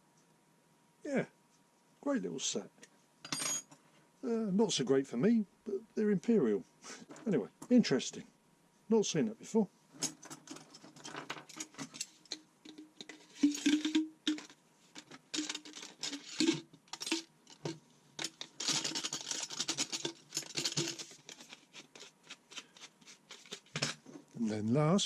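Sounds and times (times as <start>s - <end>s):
metal hand tools clinking: 10.0s - 21.4s.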